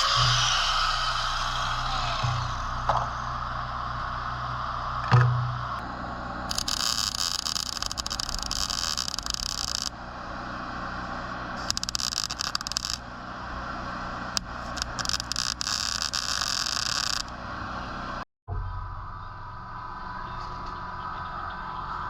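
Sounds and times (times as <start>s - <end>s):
engine humming: 0.0s - 22.0s
arc welding crackling: 6.4s - 10.2s, 11.6s - 17.5s.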